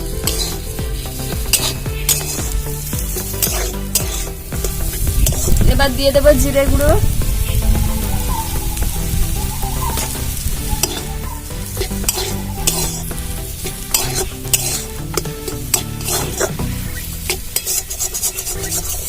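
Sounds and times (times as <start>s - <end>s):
spatula clacking against pan: 0.0s - 5.5s, 11.8s - 16.5s
spatula scraping a pan: 0.0s - 5.6s, 8.0s - 19.0s
food sizzling in oil: 0.0s - 19.0s.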